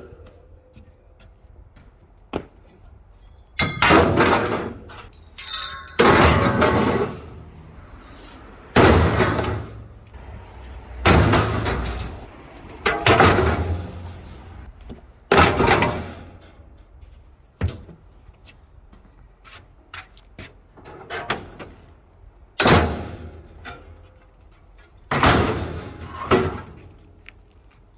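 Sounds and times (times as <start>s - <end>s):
scrap metal crashing: 3.7s - 14.7s, 15.3s - 16.5s, 25.1s - 26.9s.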